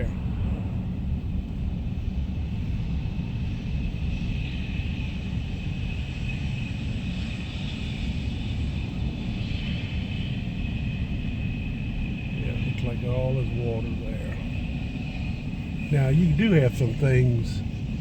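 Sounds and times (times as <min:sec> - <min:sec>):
faint high whine: 0:00.0 - 0:18.0
vehicle rumble: 0:10.0 - 0:18.0.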